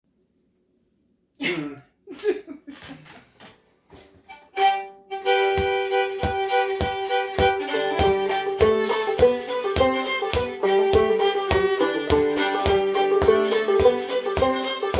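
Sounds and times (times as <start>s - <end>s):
banjo strokes: 4.0s - 14.9s
bowed fiddle: 4.0s - 14.9s.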